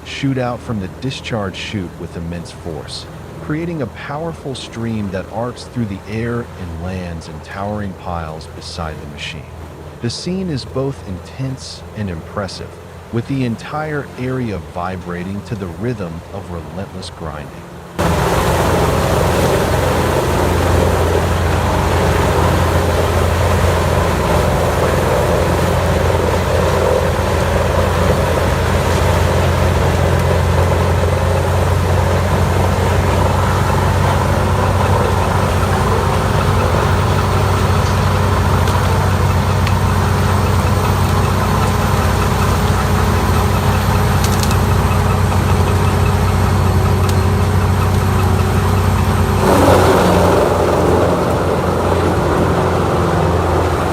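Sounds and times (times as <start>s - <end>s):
wood grinder chewing logs: 18.0s - 53.9s.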